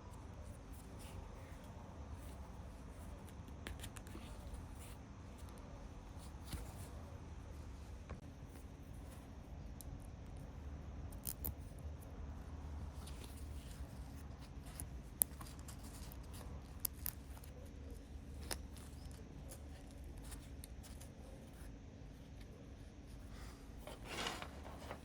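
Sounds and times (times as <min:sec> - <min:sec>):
scraping: 0:23.8 - 0:25.0.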